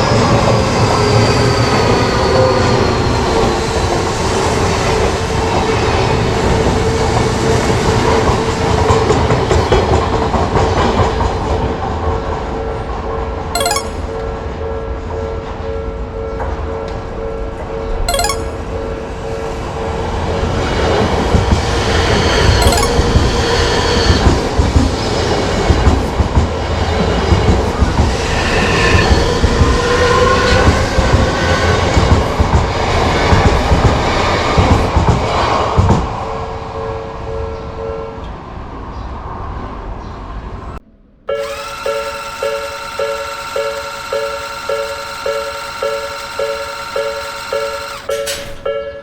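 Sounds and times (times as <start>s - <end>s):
crossing alarm bell dinging: 41.3s - 49.0s.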